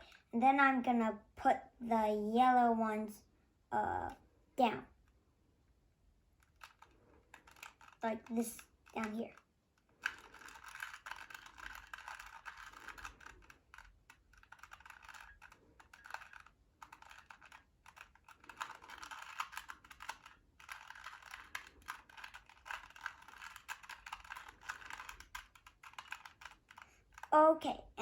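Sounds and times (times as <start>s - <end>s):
puzzle cube clicking and rattling: 6.4s - 28.0s.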